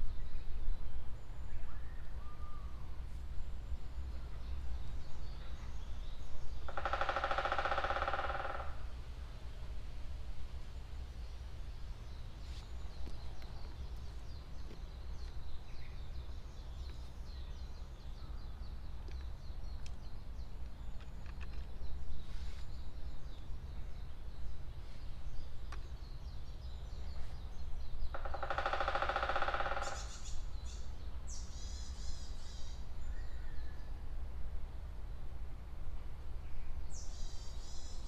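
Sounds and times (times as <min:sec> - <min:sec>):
harsh drawn-out bird call: 0:28.2 - 0:30.8.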